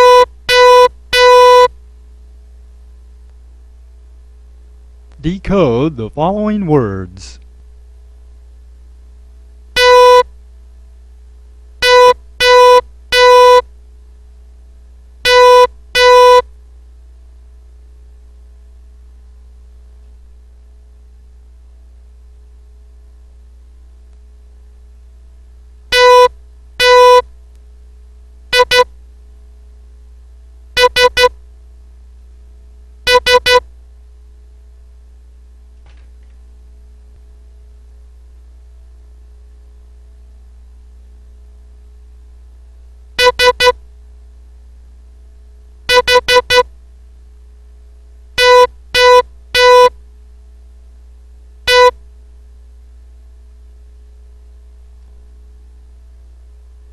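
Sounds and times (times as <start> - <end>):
morse code beeps: 0.0 - 1.7, 9.8 - 10.2, 11.8 - 13.6, 15.3 - 16.4, 26.0 - 27.2, 28.6 - 28.9, 30.8 - 31.3, 33.1 - 33.6, 43.2 - 43.8, 45.9 - 46.6, 48.4 - 49.9, 51.7 - 51.9
steady low hum: 0.0 - 56.9.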